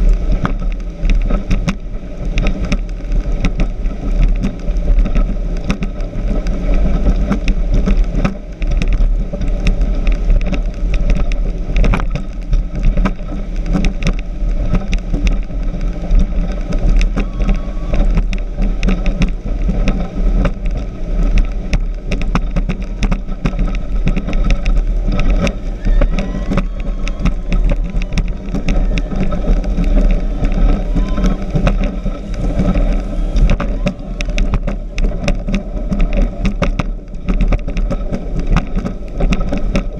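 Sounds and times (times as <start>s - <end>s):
speedboat engine rumble: 0.0s - 39.9s.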